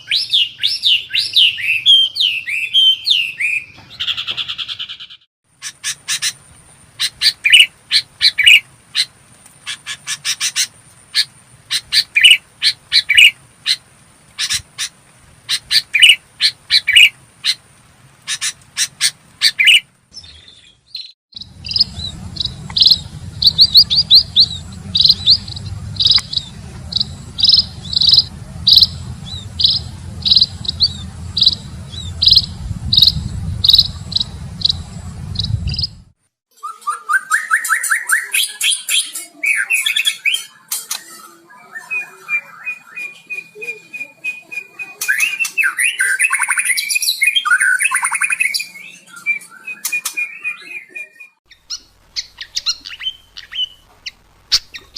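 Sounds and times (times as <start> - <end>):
bird song phrases: 0.0 - 6.4, 18.3 - 35.9, 36.5 - 54.9
bird sharp chirps: 18.3 - 36.0, 36.6 - 54.9
low hum: 21.4 - 36.2.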